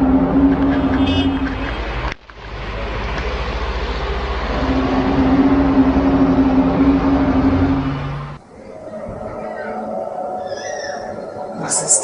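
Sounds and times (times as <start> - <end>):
deep rumble: 0.0 - 10.1
low droning tone: 0.0 - 10.2.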